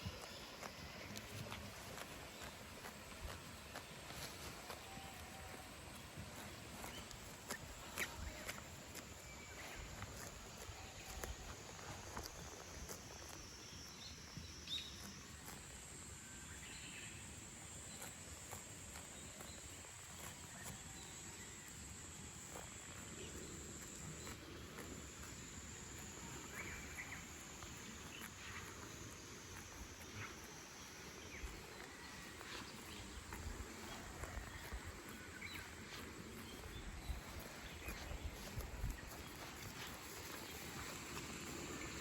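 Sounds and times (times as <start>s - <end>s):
faint clicks and rustles: 0.0s - 16.0s
insects buzzing: 0.0s - 42.0s.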